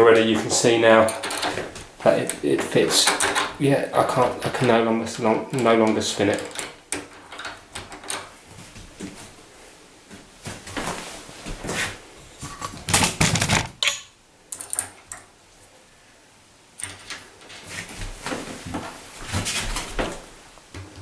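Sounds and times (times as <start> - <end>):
metallic clicks and rattles: 5.6 - 8.3, 12.6 - 15.2.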